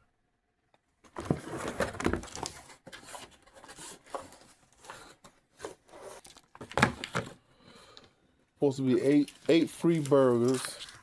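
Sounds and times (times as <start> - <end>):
packaging rustling and crinkling: 1.1 - 7.4, 8.8 - 11.0.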